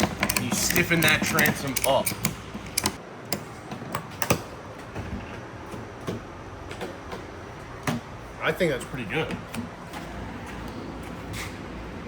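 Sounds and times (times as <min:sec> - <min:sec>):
ratchet strap clicking: 0:00.0 - 0:03.0.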